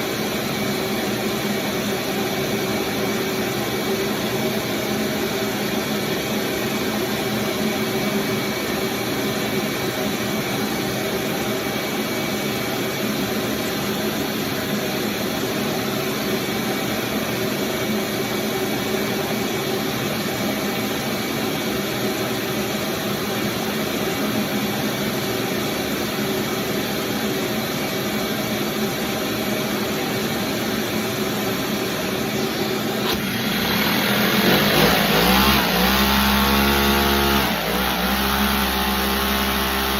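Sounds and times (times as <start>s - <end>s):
small engine running: 33.0s - 39.9s.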